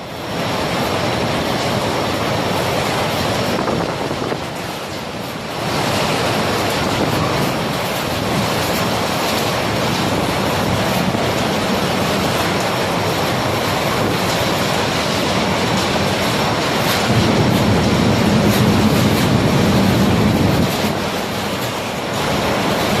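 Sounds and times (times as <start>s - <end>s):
storm wind blowing: 0.0s - 23.0s.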